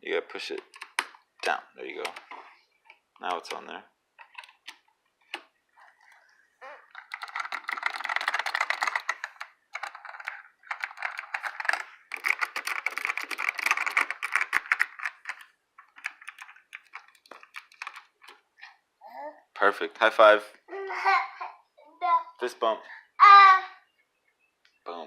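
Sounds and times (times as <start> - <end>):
keyboard typing clicks: 6.9 - 18.4.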